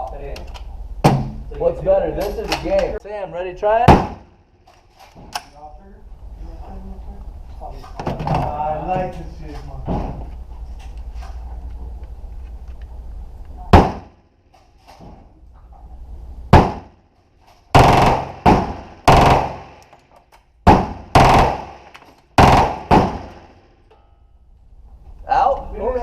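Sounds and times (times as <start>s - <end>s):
gunshots with ringing tail: 3.9s - 4.3s, 13.8s - 14.2s, 16.5s - 17.0s, 17.8s - 19.8s, 20.7s - 23.6s.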